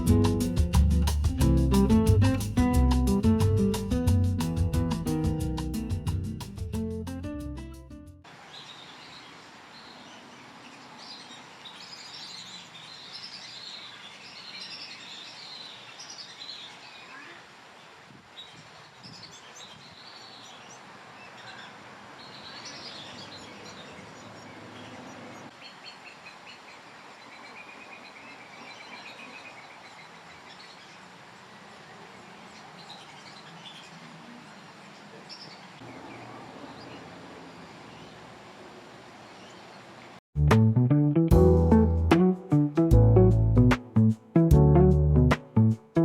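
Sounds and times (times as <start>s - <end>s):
birds chirping: 8.3s - 40.2s.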